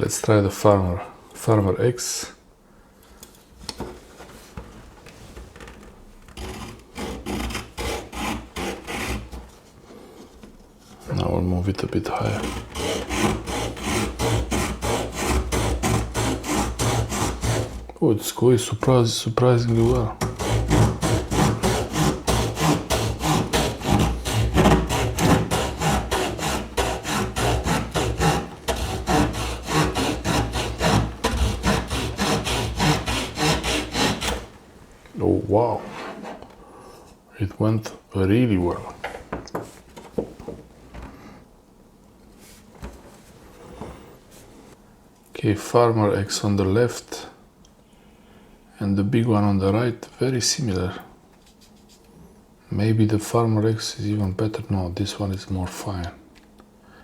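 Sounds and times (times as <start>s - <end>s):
saw rasping through branch: 6.4s - 9.4s, 12.1s - 17.9s, 19.4s - 34.5s.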